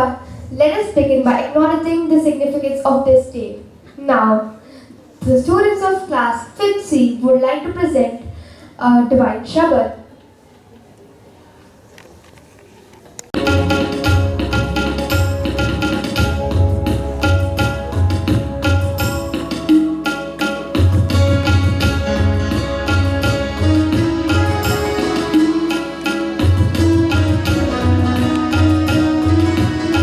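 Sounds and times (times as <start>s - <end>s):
tabla beating a rhythm: 0.0s - 2.2s, 5.2s - 5.8s, 13.4s - 30.0s
sustained melody notes: 13.4s - 30.0s.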